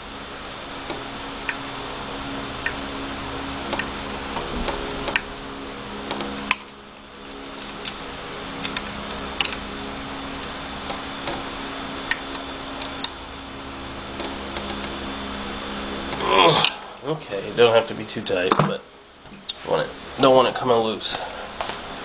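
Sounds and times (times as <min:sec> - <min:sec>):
steady low hum: 0:00.0 - 0:19.2.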